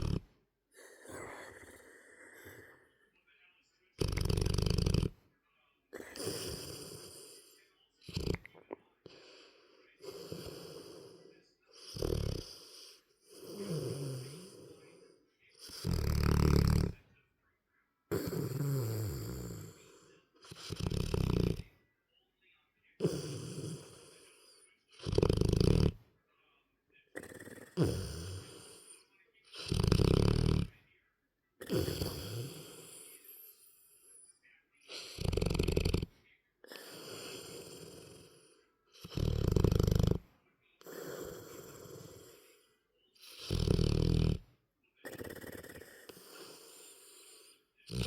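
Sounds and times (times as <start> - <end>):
person snoring: 0.0 - 2.8, 4.0 - 5.1, 6.0 - 17.0, 18.1 - 21.7, 23.0 - 26.0, 27.2 - 30.7, 31.6 - 34.3, 34.9 - 40.2, 40.8 - 44.4, 45.0 - 48.0.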